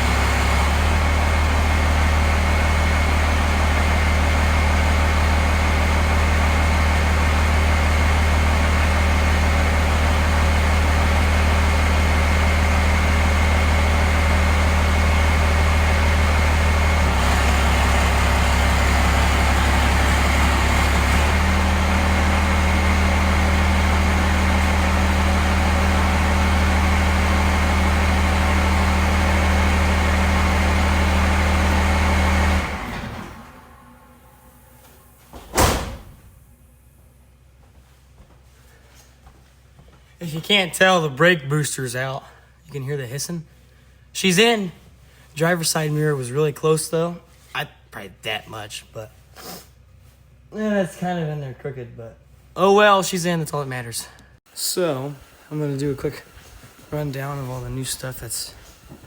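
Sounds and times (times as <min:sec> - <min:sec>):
pickup truck engine idling: 0:00.0 - 0:35.2.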